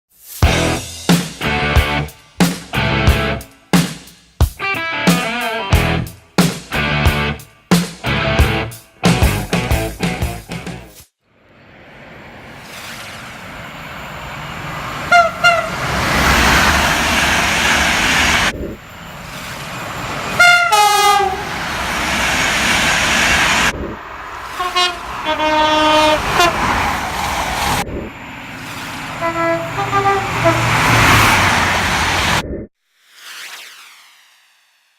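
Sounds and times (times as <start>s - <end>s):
train rumbling past: 11.4s - 32.4s
train horn blasts: 15.1s - 16.0s, 20.4s - 21.6s, 24.6s - 26.8s, 29.1s - 31.4s.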